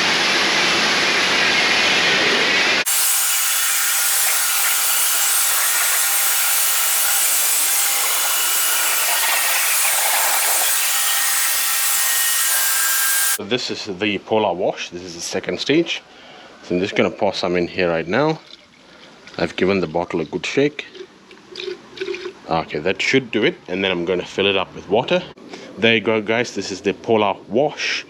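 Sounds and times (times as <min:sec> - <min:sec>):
pressure washer spraying water: 0:02.9 - 0:13.4.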